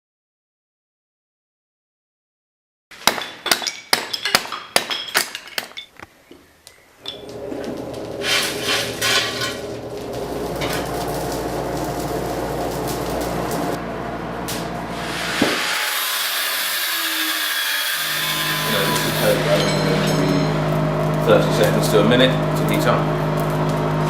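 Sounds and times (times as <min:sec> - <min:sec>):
forge fire rushing with blower hum: 0:07.1 - 0:16.0, 0:18.1 - 0:24.0
metal-on-metal strikes: 0:18.4 - 0:20.8.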